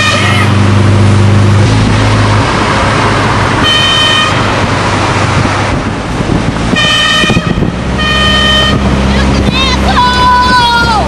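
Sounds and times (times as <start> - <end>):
air horn blasts: 0.0 - 0.6, 3.6 - 4.7, 6.7 - 9.0
car driving: 0.0 - 11.0.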